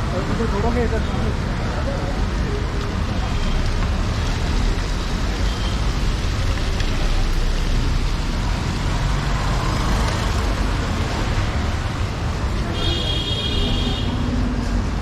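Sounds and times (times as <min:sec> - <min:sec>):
rumble of passing vehicles: 0:00.0 - 0:15.0
steady rain: 0:00.0 - 0:15.0.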